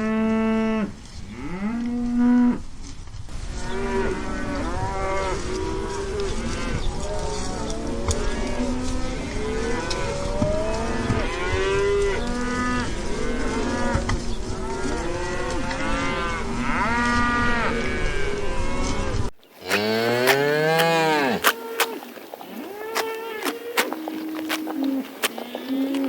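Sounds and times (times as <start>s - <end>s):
cattle herd mooing: 3.6s - 22.0s
cow mooing loudly close by: 14.7s - 22.0s.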